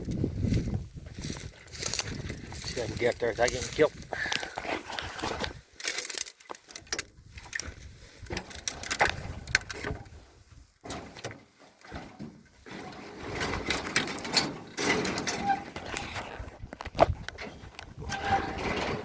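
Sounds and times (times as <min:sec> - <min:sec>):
footsteps crunching on rough ground: 0:00.0 - 0:10.8, 0:15.6 - 0:19.0
clicks and scrapes: 0:10.8 - 0:19.0.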